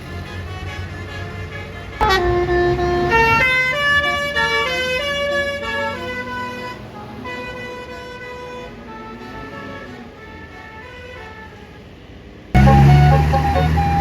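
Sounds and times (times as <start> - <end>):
multi-tone air horn melody: 0.0 - 12.0, 12.6 - 14.0.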